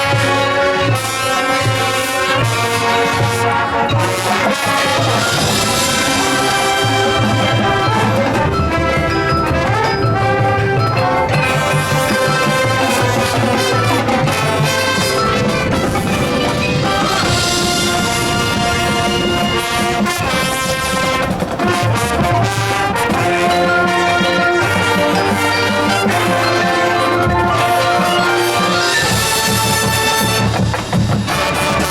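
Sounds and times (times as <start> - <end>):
marching band playing: 0.0 - 31.9.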